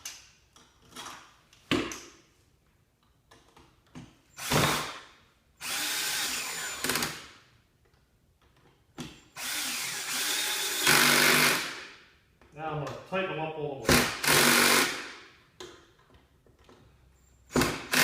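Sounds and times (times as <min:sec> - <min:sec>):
electric screw gun driving screws: 0:04.4 - 0:05.0, 0:05.6 - 0:07.3, 0:09.4 - 0:11.8, 0:13.9 - 0:15.1, 0:17.5 - 0:18.0.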